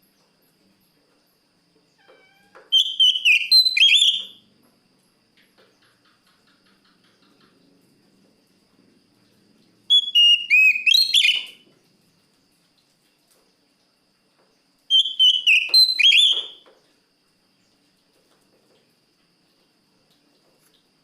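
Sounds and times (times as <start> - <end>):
bird singing whistled notes: 2.7 - 4.4, 9.9 - 11.6, 14.9 - 16.6.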